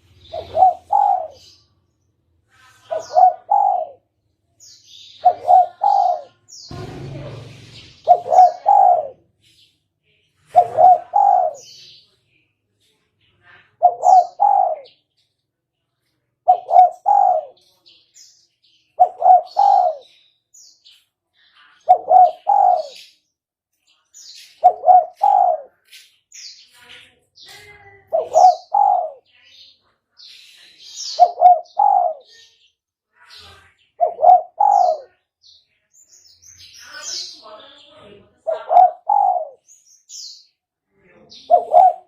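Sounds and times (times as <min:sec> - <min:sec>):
faint high bird chirps: 0:00.0 - 0:01.8, 0:02.5 - 0:04.0, 0:23.8 - 0:38.0
dove cooing: 0:00.1 - 0:01.6, 0:02.9 - 0:04.0, 0:05.2 - 0:09.2, 0:10.5 - 0:11.7, 0:13.8 - 0:15.0, 0:16.5 - 0:17.6, 0:19.0 - 0:20.1, 0:21.9 - 0:23.0, 0:24.6 - 0:25.7, 0:28.1 - 0:29.2, 0:31.1 - 0:32.3, 0:34.0 - 0:35.1, 0:38.5 - 0:39.6, 0:41.5 - 0:42.0.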